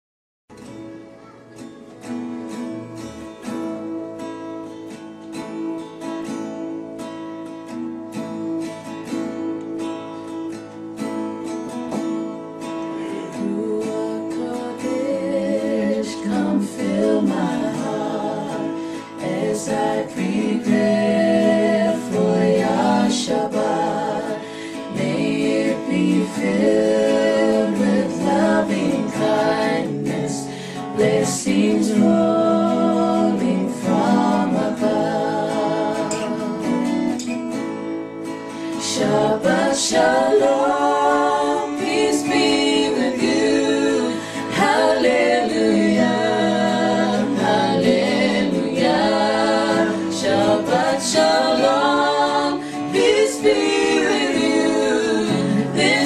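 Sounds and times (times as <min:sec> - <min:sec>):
plucked acoustic guitar: 0:00.5 - 0:56.0
person singing: 0:12.8 - 0:37.3, 0:38.5 - 0:56.0.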